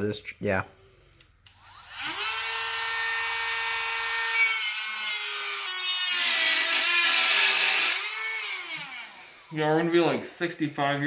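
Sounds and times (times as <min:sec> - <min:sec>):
rotary tool whining: 0:01.5 - 0:09.6.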